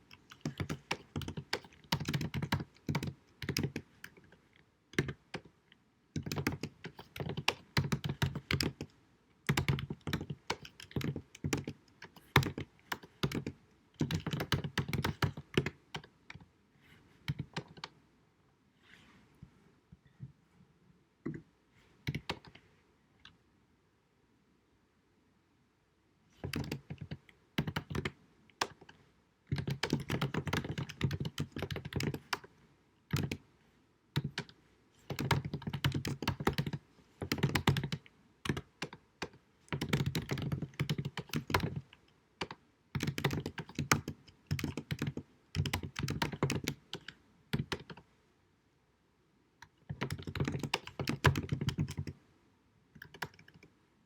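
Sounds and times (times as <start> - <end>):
keyboard typing: 0.0 - 5.5, 6.2 - 16.4, 17.3 - 18.0, 22.0 - 22.6, 26.4 - 32.5, 33.1 - 33.4, 34.2 - 48.0, 49.6 - 52.2, 53.0 - 53.7.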